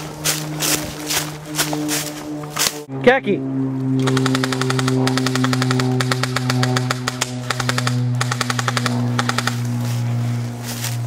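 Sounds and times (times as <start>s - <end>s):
steady low hum: 0.0s - 11.0s
airsoft rifle bursts: 4.0s - 9.6s.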